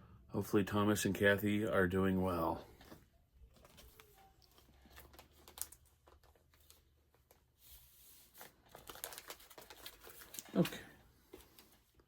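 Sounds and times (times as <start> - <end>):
plastic bag and paper rustling: 2.7 - 12.0.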